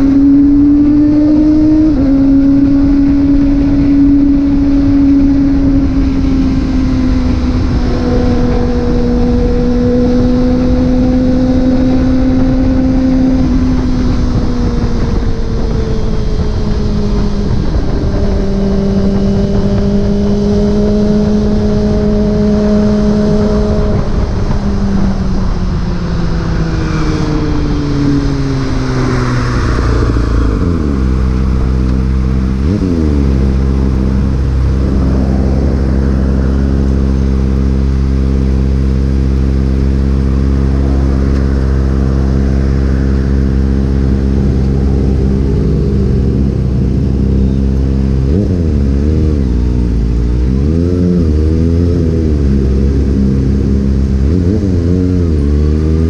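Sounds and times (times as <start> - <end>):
constant rushing noise: 0.0 - 56.0
motorcycle engine running: 0.0 - 56.0.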